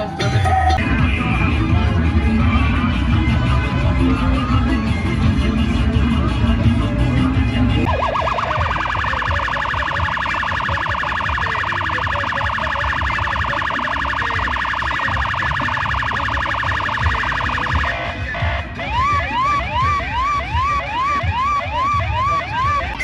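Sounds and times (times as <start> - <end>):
music: 0.0 - 23.0
electronic siren warbling: 7.8 - 18.2, 18.8 - 23.0.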